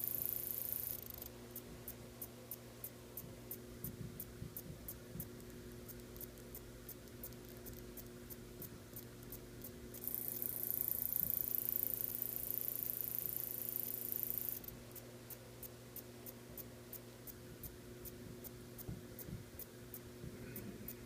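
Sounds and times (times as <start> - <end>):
grasshopper stridulating: 0.0 - 1.6, 5.9 - 17.4.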